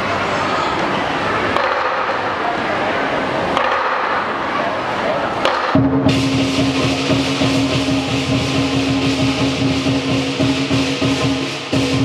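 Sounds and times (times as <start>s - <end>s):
percussion band drums and cymbals: 5.4s - 12.0s.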